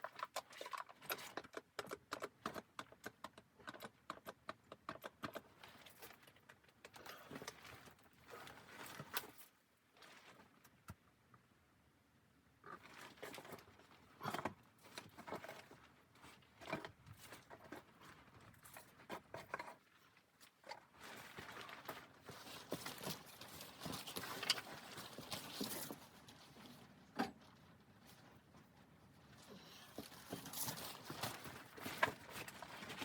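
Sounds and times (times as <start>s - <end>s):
rustling: 17.2s - 33.0s.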